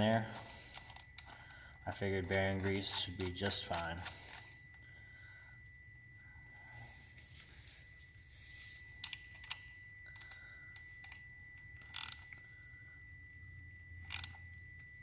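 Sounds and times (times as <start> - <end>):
tools and metal parts clicking: 0.0 - 4.4, 11.8 - 12.3, 14.1 - 14.4
ratchet wrench bursts: 11.9 - 12.2, 14.1 - 14.3.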